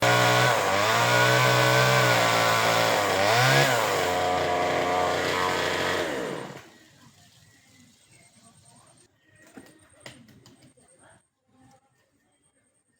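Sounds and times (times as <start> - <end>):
chainsaw cutting wood: 0.0 - 6.7.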